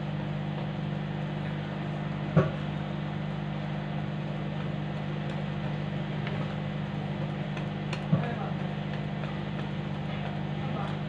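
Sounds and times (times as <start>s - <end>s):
low machine hum: 0.0s - 11.0s.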